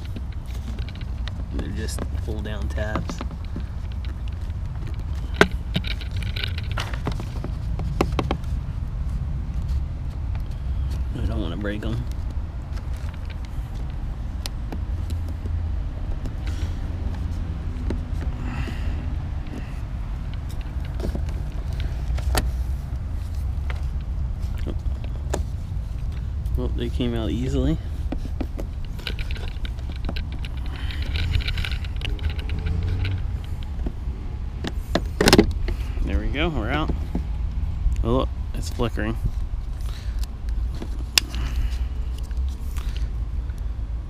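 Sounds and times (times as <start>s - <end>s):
plastic clicks and scrapes: 0.0s - 8.6s, 19.4s - 35.9s
steady low rumble: 0.0s - 44.0s.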